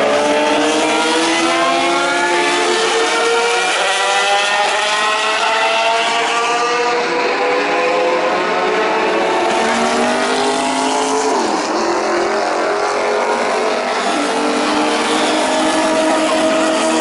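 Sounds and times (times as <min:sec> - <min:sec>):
race car engine revving: 0:00.0 - 0:17.0.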